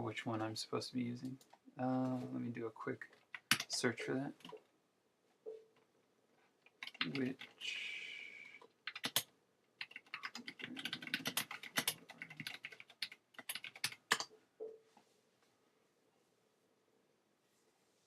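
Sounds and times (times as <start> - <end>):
keyboard typing: 3.2 - 3.8, 6.7 - 7.6, 8.8 - 14.8.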